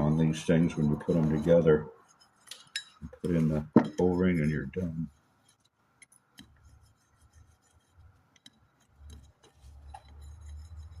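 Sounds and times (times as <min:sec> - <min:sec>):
light clicks and taps of parts: 0:08.3 - 0:10.2.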